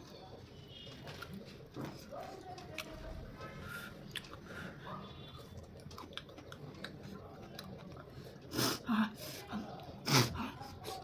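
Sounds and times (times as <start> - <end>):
person chewing with crunching: 5.4 - 8.8.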